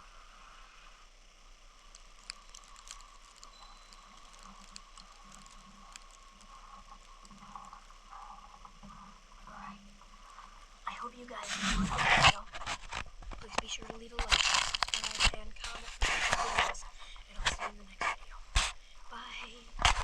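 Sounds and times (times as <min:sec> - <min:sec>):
faint chime tone: 0:03.5 - 0:05.8.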